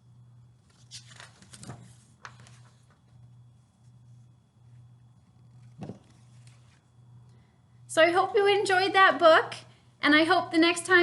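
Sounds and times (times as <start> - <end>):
faint pulsing low hum: 0.0 - 11.0
paper pages rustling: 0.6 - 6.9.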